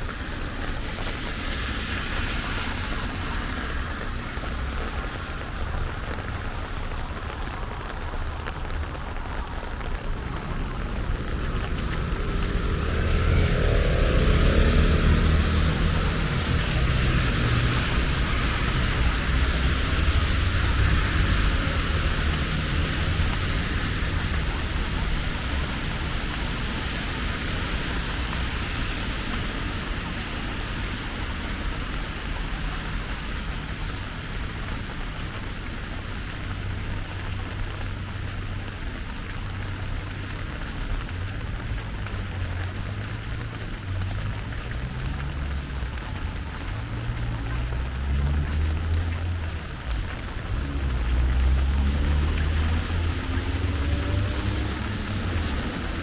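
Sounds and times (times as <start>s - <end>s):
steady rain hiss: 0.0s - 56.0s
low rumble: 8.7s - 28.8s.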